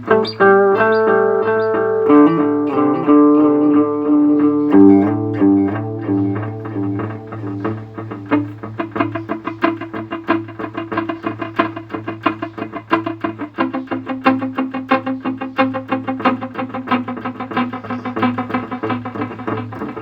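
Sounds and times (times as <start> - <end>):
electric guitar with delay: 0.0 - 20.0.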